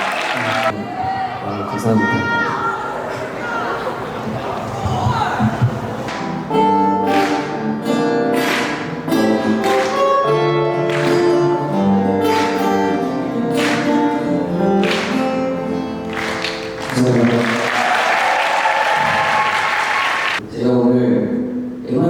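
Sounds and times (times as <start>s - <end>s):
applause: 0.0s - 0.7s, 7.1s - 7.5s, 8.4s - 8.9s, 10.9s - 11.2s, 12.3s - 12.7s, 13.6s - 14.0s, 14.8s - 15.2s, 16.1s - 20.4s
acoustic guitar strumming chords: 6.1s - 17.5s.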